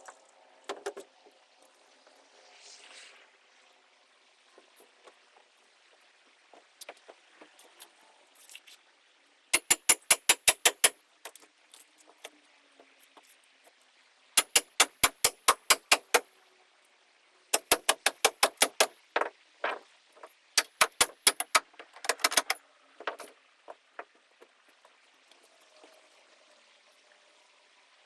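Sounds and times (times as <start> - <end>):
scattered knocks: 9.6 - 11.0, 14.4 - 16.4, 17.6 - 19.8, 20.6 - 24.1
power hammer rapid metallic blows: 14.4 - 16.4, 17.6 - 18.9.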